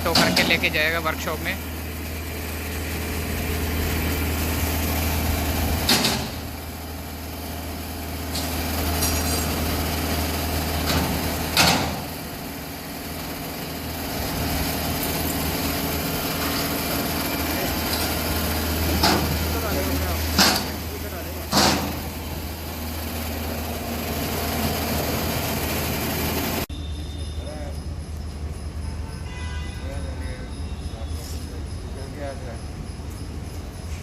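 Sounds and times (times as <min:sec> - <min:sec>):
sharp clanks: 0:00.0 - 0:01.1, 0:05.8 - 0:06.7, 0:10.8 - 0:12.2, 0:15.0 - 0:22.4
vehicle engine idling: 0:00.0 - 0:34.0.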